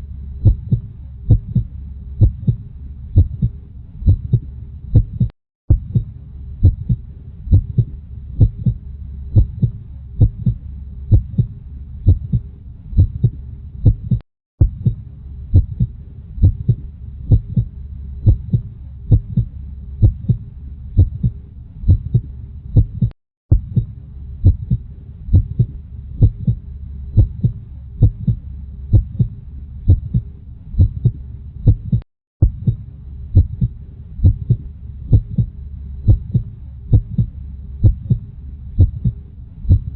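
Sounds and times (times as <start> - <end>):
low hum: 0.0 - 39.9
heartbeat thumps: 0.4 - 39.9.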